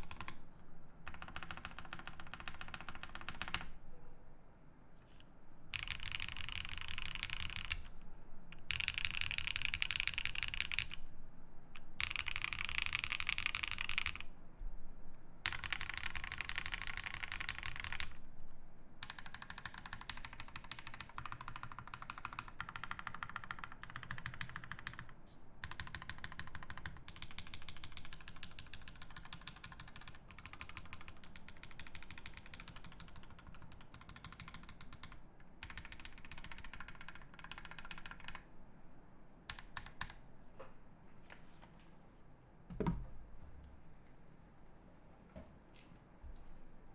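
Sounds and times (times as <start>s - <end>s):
fast typing on mechanical keyboard: 0.0s - 0.4s, 1.0s - 3.7s, 5.7s - 7.9s, 8.6s - 11.0s, 11.8s - 14.3s, 15.4s - 18.2s, 19.0s - 38.5s, 39.5s - 40.2s.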